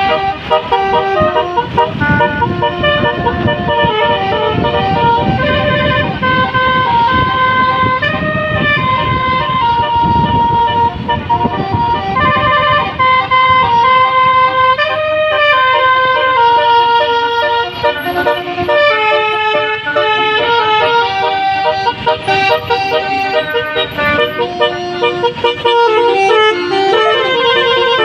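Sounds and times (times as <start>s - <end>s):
bus air horn playing a melody: 0.0s - 28.0s.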